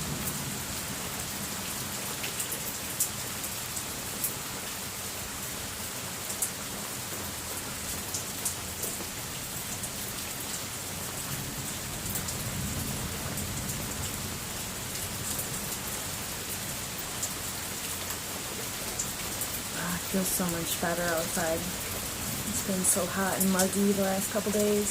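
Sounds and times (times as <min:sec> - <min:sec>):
distant thunder rumble: 0:00.0 - 0:01.5, 0:11.2 - 0:15.7, 0:19.7 - 0:24.9
raindrops ticking close by: 0:00.0 - 0:24.9
steady rain: 0:00.0 - 0:24.9.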